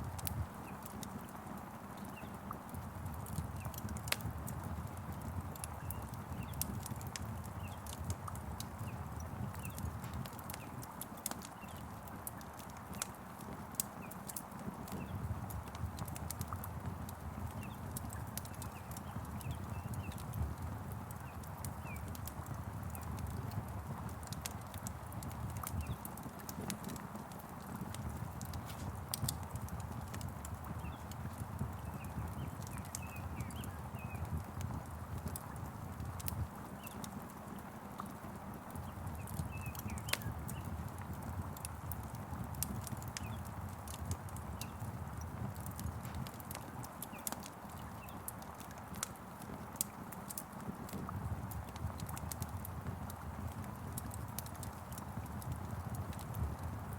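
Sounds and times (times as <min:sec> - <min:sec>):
wood fire crackling: 0:00.0 - 0:56.9
faint bird chirps: 0:31.8 - 0:34.3.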